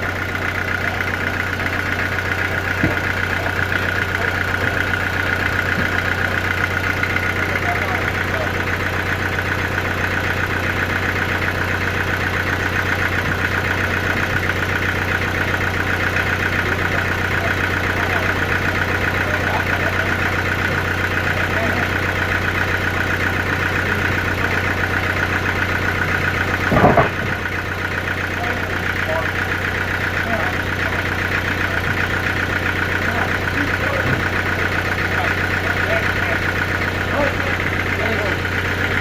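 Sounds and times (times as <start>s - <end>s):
sawmill machinery humming: 0.0s - 39.0s
loud knock: 26.7s - 27.4s.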